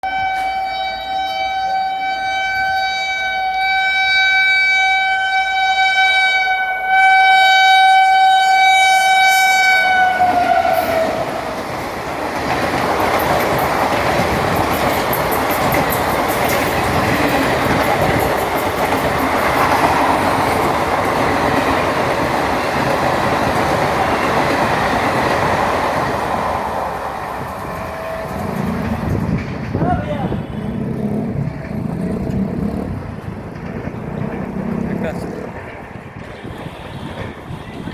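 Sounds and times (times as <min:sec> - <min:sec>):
locomotive horn blast: 0:00.0 - 0:11.5, 0:27.6 - 0:37.9
train rumbling past: 0:00.0 - 0:37.9
wheels clacking over rail joints: 0:08.0 - 0:37.9.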